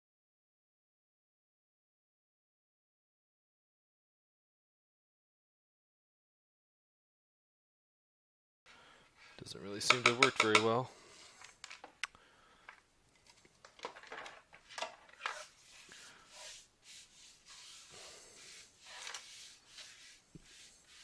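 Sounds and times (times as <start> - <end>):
hand saw scraping plastic: 15.1 - 16.6, 18.5 - 21.0.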